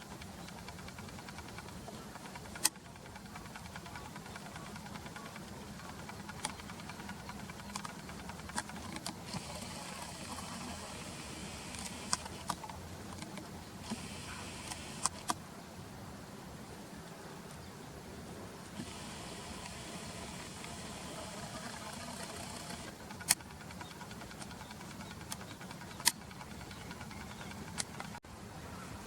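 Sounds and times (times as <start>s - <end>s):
steady low hum: 0.0s - 16.8s, 18.2s - 28.6s
short sharp clicks: 13.2s - 15.4s
hiss: 18.8s - 21.4s.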